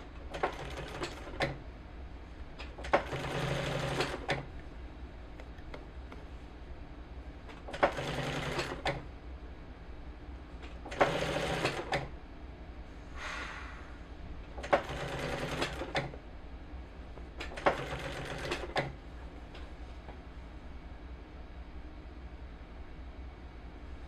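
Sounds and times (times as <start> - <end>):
sewing machine stitching: 2.8 - 4.4, 7.7 - 9.0, 10.9 - 12.1, 14.6 - 16.2, 17.4 - 19.0.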